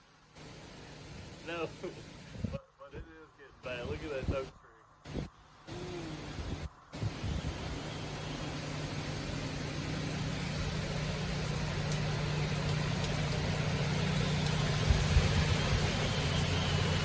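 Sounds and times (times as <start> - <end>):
road noise: 0.0 - 17.0
vehicle engine humming: 5.0 - 17.0.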